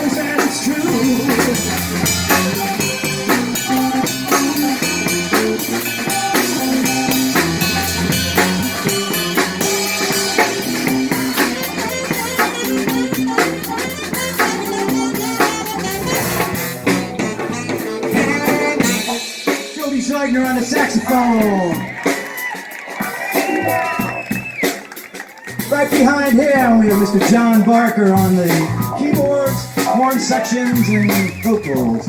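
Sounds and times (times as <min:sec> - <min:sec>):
bass and guitar: 0:00.0 - 0:32.0
drum kit beat: 0:00.0 - 0:32.0.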